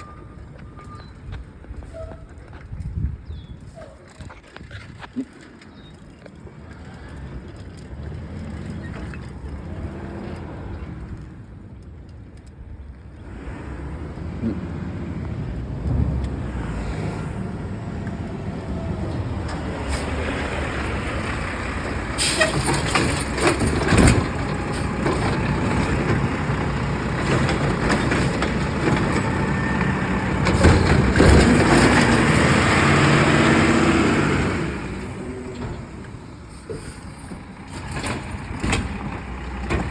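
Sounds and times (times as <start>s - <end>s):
garbage truck engine: 13.2s - 39.9s.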